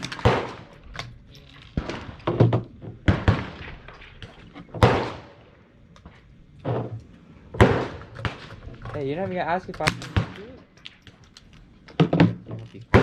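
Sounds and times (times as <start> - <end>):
gunshots: 0.0 - 0.8, 3.0 - 4.1, 4.7 - 5.5, 7.5 - 8.5, 9.8 - 10.6.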